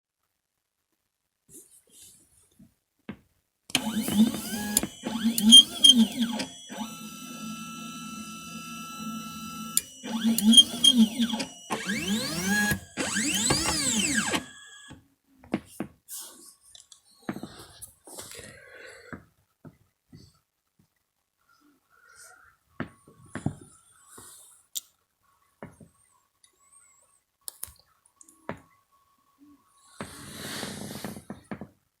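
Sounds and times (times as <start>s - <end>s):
stepper motors whining: 3.7s - 15.0s
sharp machine clicks: 9.8s - 14.9s.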